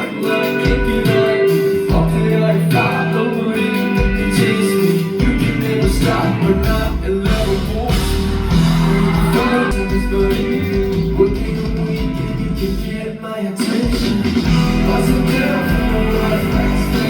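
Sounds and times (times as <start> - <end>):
guitar: 0.0 - 17.0
person singing: 0.0 - 17.0
steady low beat: 6.7 - 11.2.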